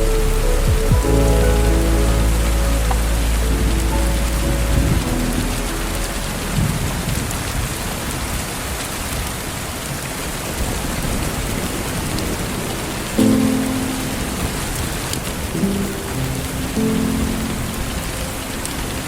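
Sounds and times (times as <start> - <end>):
lofi music track: 0.0 - 7.3
low rumble of thunder: 0.0 - 9.4
rain falling: 0.0 - 19.0.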